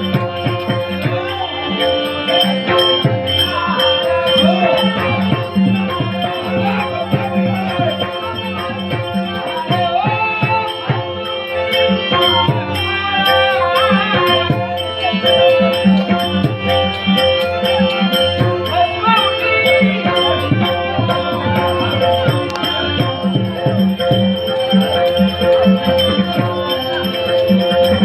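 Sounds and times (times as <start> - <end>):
devotional melody: 0.0 - 28.0
held drone: 11.2 - 28.0
hand drum strokes: 19.9 - 28.0.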